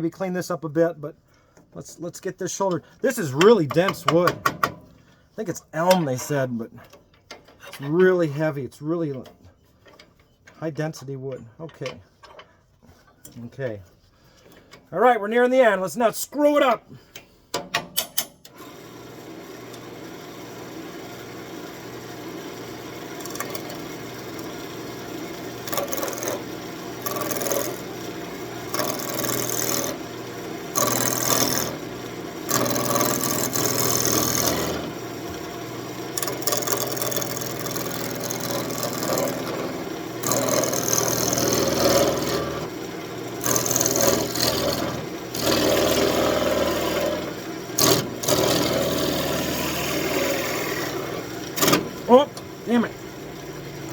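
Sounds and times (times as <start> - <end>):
turning tool cutting wood: 18.6 - 53.9
wood lathe motor hum: 18.6 - 53.9.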